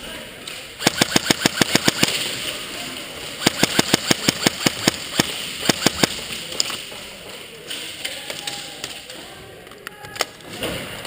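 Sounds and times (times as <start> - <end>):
airsoft guns firing: 0.8 - 2.5, 3.4 - 6.8.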